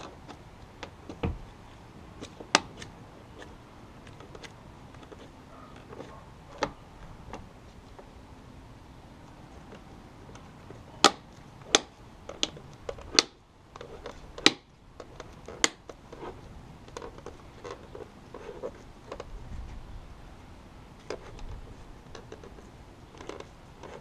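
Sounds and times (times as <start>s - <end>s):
rustling: 9.1s - 24.0s.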